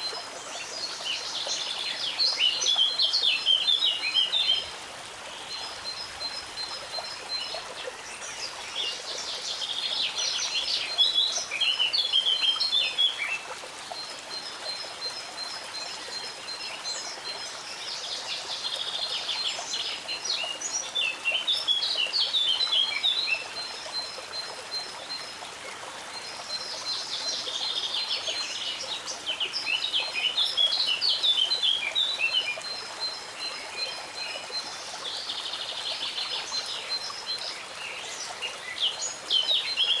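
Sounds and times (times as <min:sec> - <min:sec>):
songbird singing: 0:00.0 - 0:40.0.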